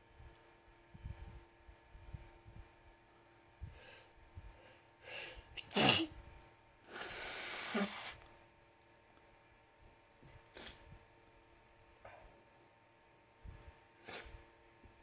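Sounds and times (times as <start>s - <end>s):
person sneezing: 5.6s - 6.2s, 7.0s - 8.2s, 14.1s - 14.4s.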